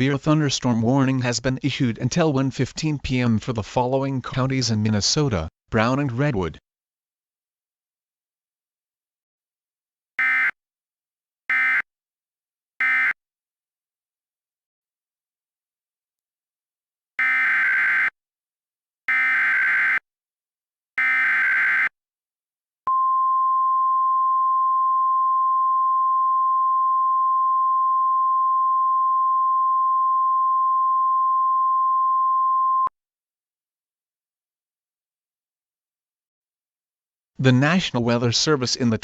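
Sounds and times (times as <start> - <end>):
steady warning alarm tone: 10.2 - 10.6, 11.5 - 11.9, 12.8 - 13.2, 17.2 - 18.2, 19.1 - 20.0, 21.0 - 21.9.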